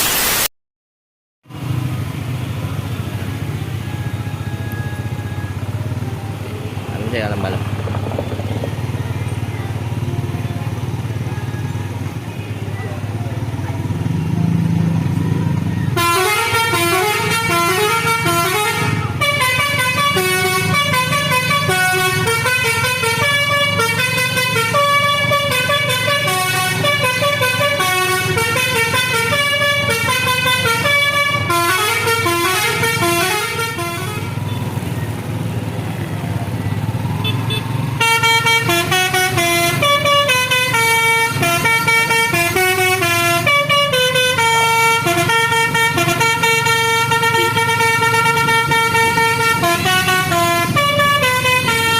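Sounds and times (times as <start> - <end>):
bus engine humming: 1.4 - 51.9
bus horn playing a melody: 15.9 - 34.9, 37.1 - 51.9.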